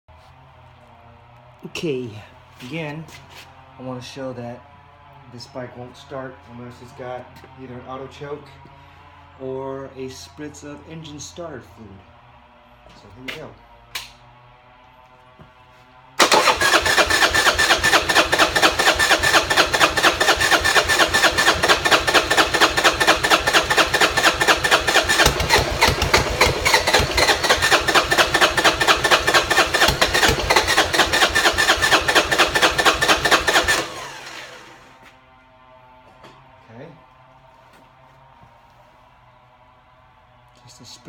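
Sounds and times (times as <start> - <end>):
electric starter cranking engine: 16.2 - 35.1.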